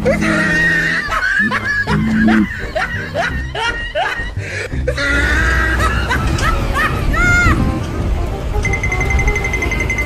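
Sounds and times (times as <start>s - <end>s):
cartoonish snickering laugh: 0.0s - 7.3s
background music: 0.0s - 10.0s.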